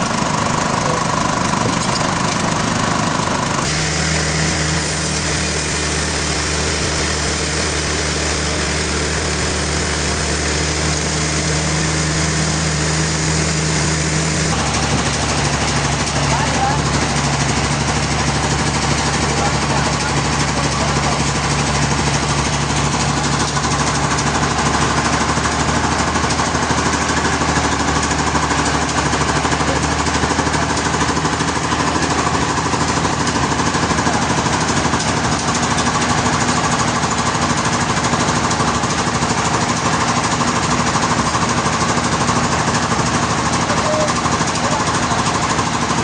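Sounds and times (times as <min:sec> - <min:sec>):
sawmill machinery pulsing: 0:00.0 - 0:46.0.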